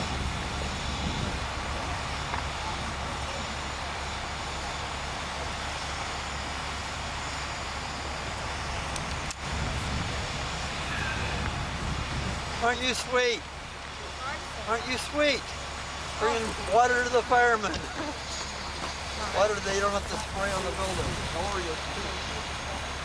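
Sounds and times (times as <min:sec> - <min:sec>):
outdoor hiss: 0:00.0 - 0:23.0
vehicle engines rumbling: 0:00.0 - 0:23.0.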